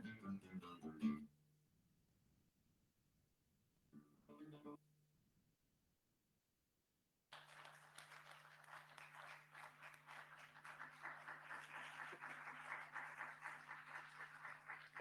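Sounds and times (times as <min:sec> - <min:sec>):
audience applauding: 0:07.3 - 0:15.0.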